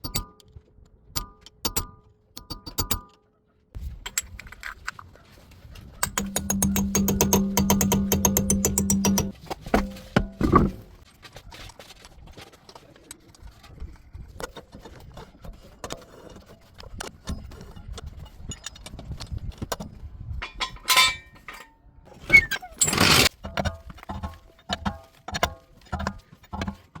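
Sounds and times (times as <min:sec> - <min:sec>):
metal tools clinking and knocking: 0:06.0 - 0:10.9, 0:17.2 - 0:27.0
loud ringing metal strike: 0:06.1 - 0:10.6.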